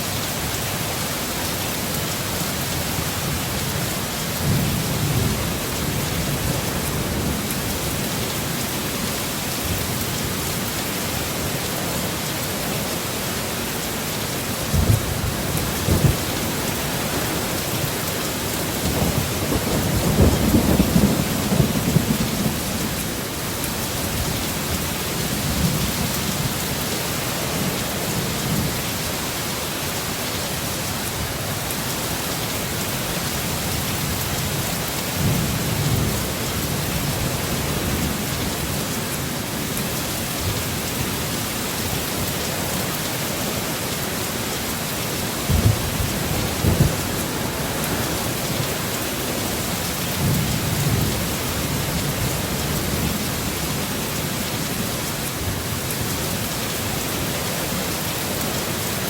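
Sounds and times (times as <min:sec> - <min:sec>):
heavy rain: 0:00.0 - 0:59.0
thunder rumbling: 0:14.7 - 0:23.0, 0:45.4 - 0:53.6.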